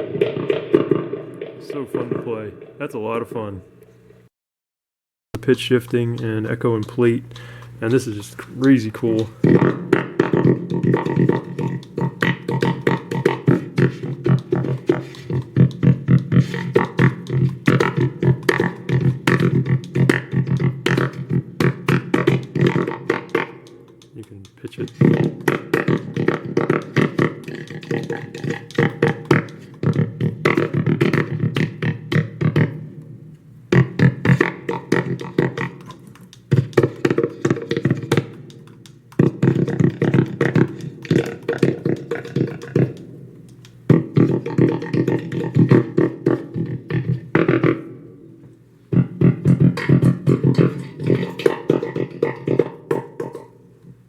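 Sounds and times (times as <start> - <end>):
hand taps on electronic drum: 8.6 - 32.8, 33.8 - 43.1.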